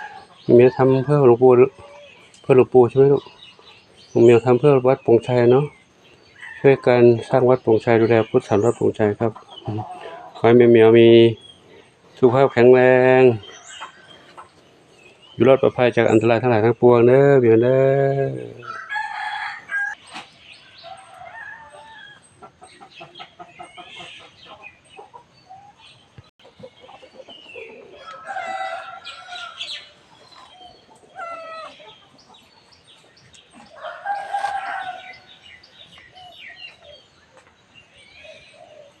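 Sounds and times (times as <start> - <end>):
roosters crowing: 0.0 - 11.6, 12.3 - 16.4, 17.1 - 37.1
chickens clucking: 0.0 - 39.0.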